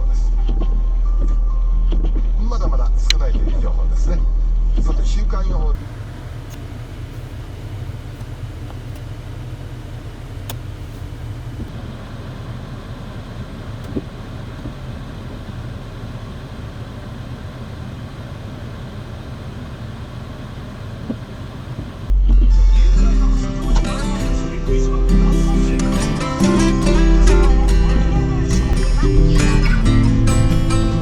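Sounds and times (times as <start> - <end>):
road and engine rumble in car cabin: 4.7 - 31.0
faint clicks: 5.8 - 22.1.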